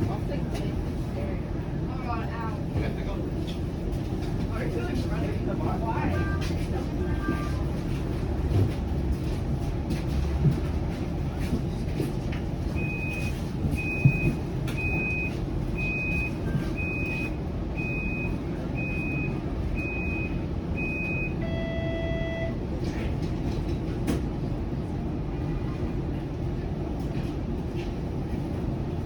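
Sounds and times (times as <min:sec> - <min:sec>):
streetcar interior rumble: 0:00.0 - 0:29.0
high-pitched warning beeps: 0:12.8 - 0:22.6.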